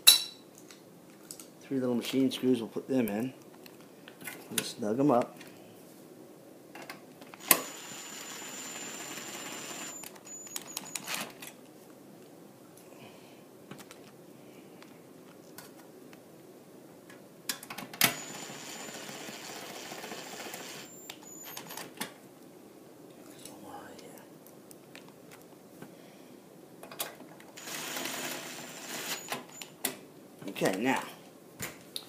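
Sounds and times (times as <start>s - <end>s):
electric screwdriver whining: 7.4s - 10.2s, 18.1s - 21.0s, 27.6s - 29.6s.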